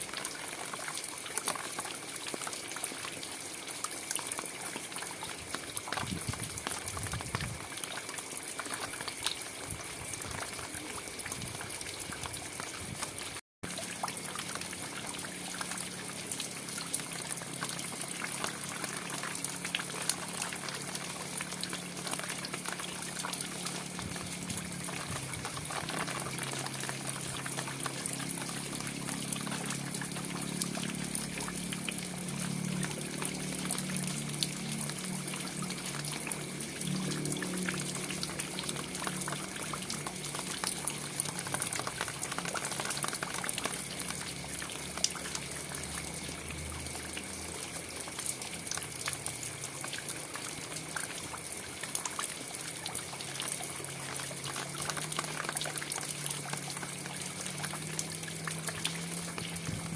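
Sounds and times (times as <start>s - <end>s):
raindrops ticking: 0.0s - 59.9s
steady rain falling: 0.0s - 59.9s.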